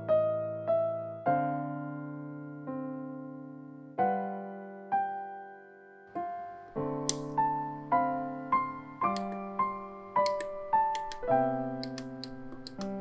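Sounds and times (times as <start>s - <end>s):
sharp clicks: 6.9s - 7.4s, 9.1s - 9.5s, 10.2s - 13.0s.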